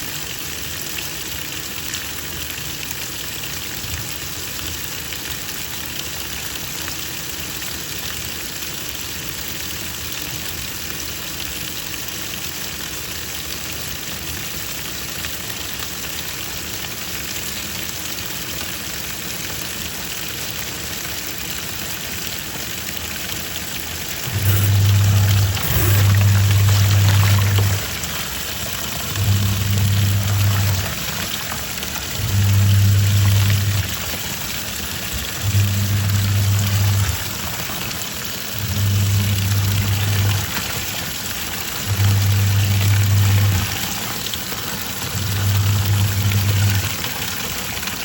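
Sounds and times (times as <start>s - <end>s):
water hissing in a tub: 0.0s - 48.0s
washing machine motor humming: 23.8s - 48.0s.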